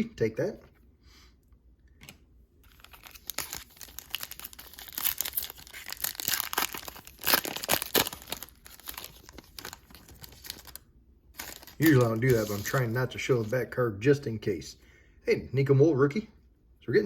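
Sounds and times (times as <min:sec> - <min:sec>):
foil wrapper tearing and crinkling: 0:02.6 - 0:10.8, 0:11.4 - 0:13.5.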